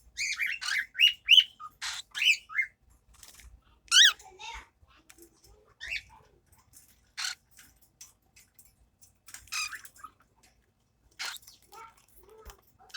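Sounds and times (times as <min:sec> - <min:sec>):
parrots chirping and squawking: 0:00.2 - 0:04.3, 0:05.7 - 0:07.7, 0:09.3 - 0:10.5, 0:11.1 - 0:12.9
small clicks and ticks: 0:02.9 - 0:12.9.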